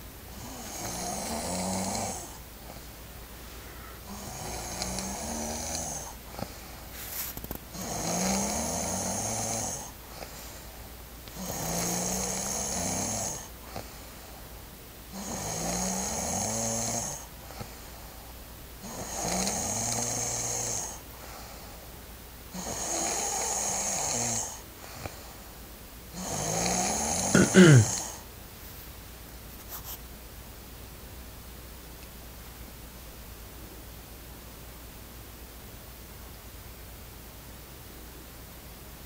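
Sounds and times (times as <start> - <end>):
woman snoring: 0.3 - 2.4, 3.8 - 6.5, 7.7 - 10.0, 11.4 - 13.5, 15.1 - 17.3, 18.8 - 21.0, 22.5 - 25.1, 26.1 - 28.2.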